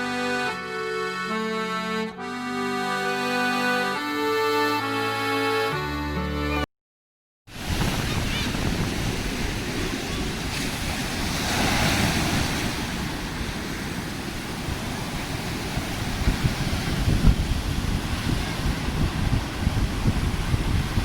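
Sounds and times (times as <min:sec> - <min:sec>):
sea surf washing in: 0:07.5 - 0:21.0
wind buffeting microphone: 0:07.5 - 0:21.0.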